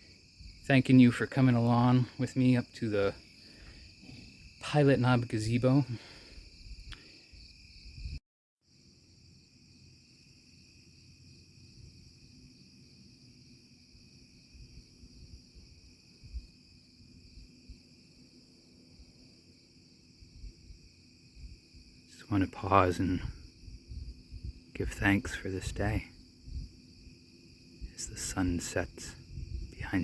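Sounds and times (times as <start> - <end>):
low murmur of wind: 0.0 - 8.2, 14.5 - 30.0
crickets trilling: 0.0 - 30.0.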